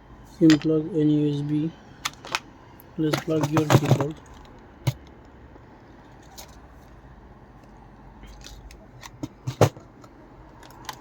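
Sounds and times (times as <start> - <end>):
handling noise: 2.0 - 5.4, 6.0 - 11.0.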